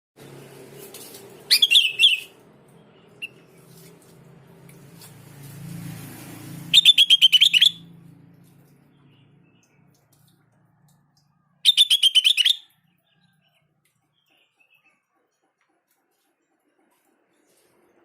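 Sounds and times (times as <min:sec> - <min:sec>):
bird chattering song: 0:01.4 - 0:03.9, 0:06.7 - 0:08.0, 0:11.4 - 0:16.2.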